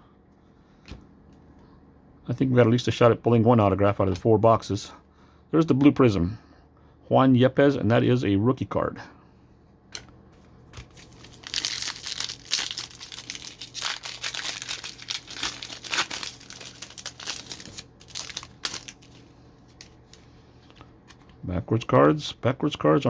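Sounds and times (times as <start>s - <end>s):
foil wrapper crinkling and tearing: 10.8s - 20.0s.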